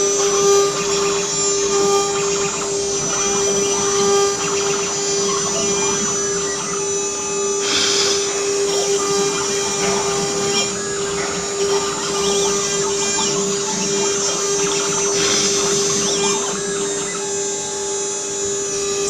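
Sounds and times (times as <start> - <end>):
router spindle whine: 0.0 - 19.0
burst of hiss: 7.6 - 9.0.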